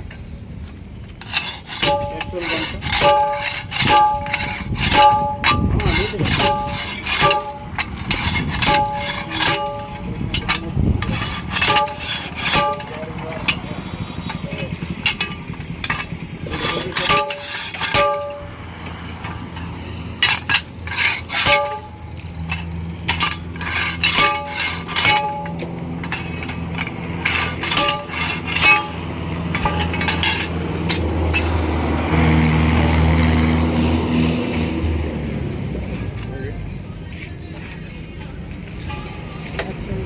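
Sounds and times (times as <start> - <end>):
steady engine hum: 0.0 - 40.0
metal tools clinking on metal: 1.1 - 31.6, 38.7 - 40.0.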